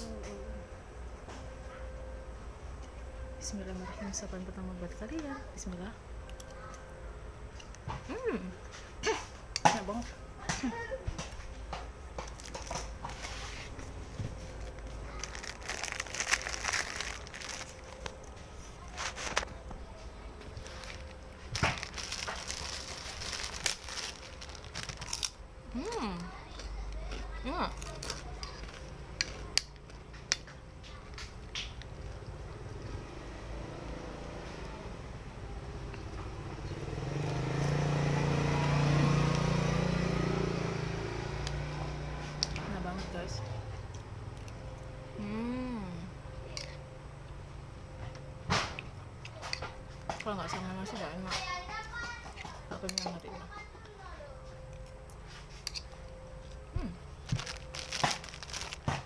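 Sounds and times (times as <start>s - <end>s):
wet chewing of noodles: 12.2s - 19.5s, 48.0s - 59.0s
vehicle engine passing by: 31.4s - 53.4s.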